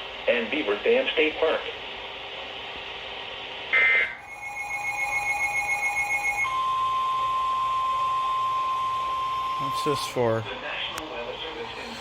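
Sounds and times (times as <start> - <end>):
radio hiss: 9.6 - 12.0.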